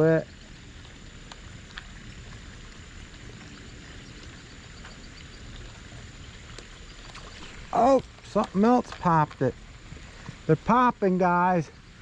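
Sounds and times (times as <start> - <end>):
rain hissing: 7.2 - 11.2.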